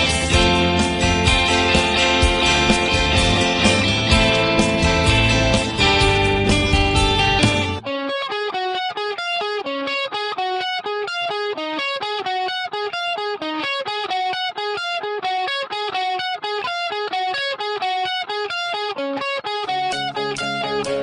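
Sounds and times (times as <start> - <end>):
band playing: 0.0 - 7.8, 19.6 - 21.0
guitar picking single notes: 0.0 - 21.0.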